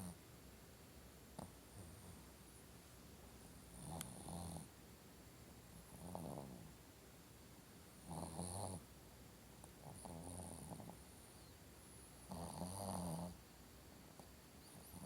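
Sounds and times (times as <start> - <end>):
dog snoring: 0.0 - 0.2, 1.4 - 2.2, 3.7 - 4.7, 5.8 - 6.7, 8.0 - 8.9, 9.8 - 11.2, 12.2 - 13.4, 14.7 - 15.0.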